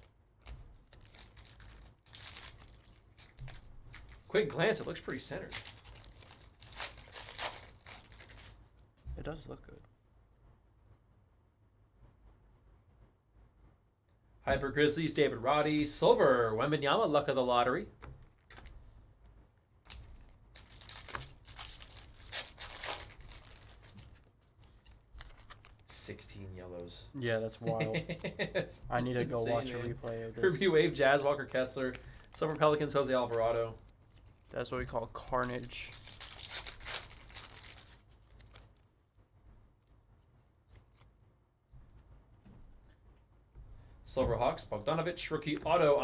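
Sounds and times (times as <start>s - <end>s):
foil wrappers crinkling and tearing: 0.0s - 8.6s, 19.8s - 26.0s, 29.4s - 39.0s.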